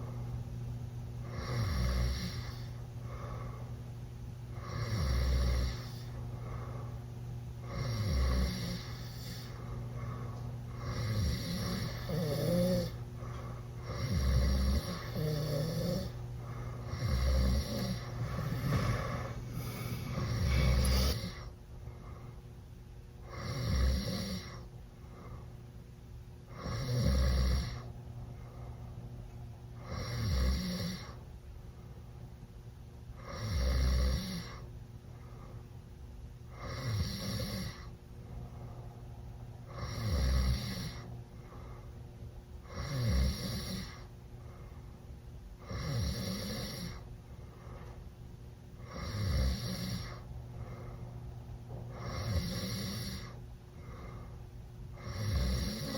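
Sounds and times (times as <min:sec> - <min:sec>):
quiet breathing: 0:00.0 - 0:55.9
loud snoring: 0:01.2 - 0:03.4, 0:04.6 - 0:06.6, 0:07.6 - 0:21.5, 0:23.2 - 0:24.7, 0:26.5 - 0:27.9, 0:29.8 - 0:31.2, 0:33.2 - 0:34.6, 0:36.5 - 0:37.9, 0:39.7 - 0:41.1, 0:42.6 - 0:44.1, 0:45.6 - 0:47.0, 0:48.8 - 0:50.3, 0:51.9 - 0:54.1, 0:55.0 - 0:55.9.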